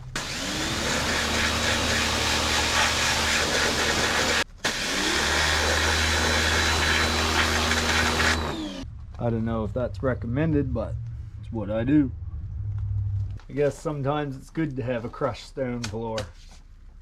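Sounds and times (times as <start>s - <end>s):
water jet hissing: 0.0s - 4.5s
pressure washer motor whine: 0.0s - 8.8s.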